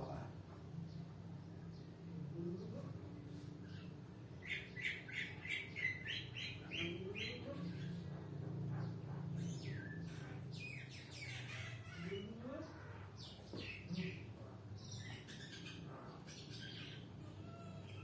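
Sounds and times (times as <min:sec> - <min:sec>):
bird chirping: 0:03.6 - 0:08.0, 0:08.8 - 0:12.3, 0:13.2 - 0:18.0.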